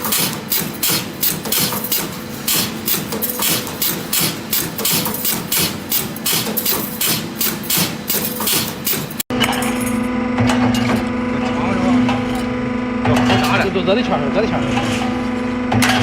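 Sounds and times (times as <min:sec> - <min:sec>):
hammering: 0:00.0 - 0:09.3.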